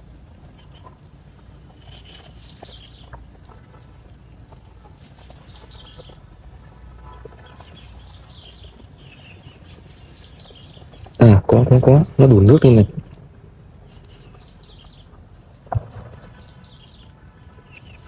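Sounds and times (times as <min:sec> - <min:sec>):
bird chirping: 0:00.5 - 0:03.2, 0:04.8 - 0:06.3, 0:07.0 - 0:13.0, 0:13.8 - 0:18.0
faint clicks: 0:15.7 - 0:18.0.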